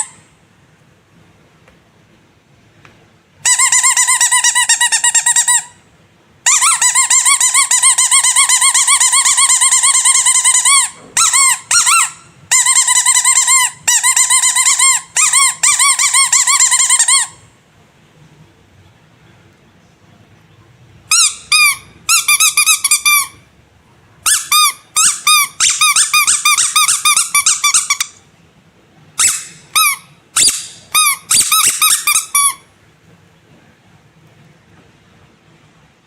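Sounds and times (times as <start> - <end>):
rubber squeaky toy squeaking: 0.0 - 0.2, 3.4 - 5.8, 6.4 - 17.4, 21.1 - 23.5, 24.2 - 28.2, 29.2 - 32.7.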